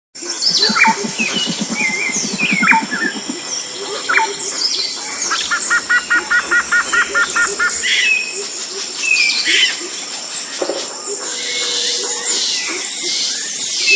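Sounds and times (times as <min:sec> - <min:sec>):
fast low pulsing call: 0:00.2 - 0:08.3
rapid repeated calls: 0:00.2 - 0:09.7
high insect drone: 0:00.2 - 0:13.9
birds whistling and chirping: 0:00.3 - 0:09.7.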